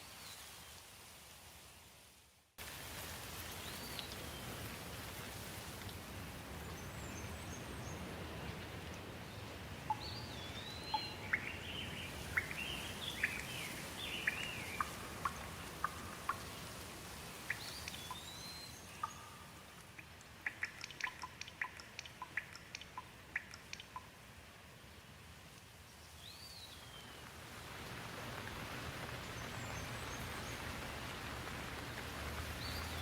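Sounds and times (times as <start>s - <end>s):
rain falling on leaves: 0.0s - 33.0s
water drips tapping: 9.8s - 10.2s, 10.9s - 13.5s, 14.2s - 16.7s, 17.4s - 24.2s.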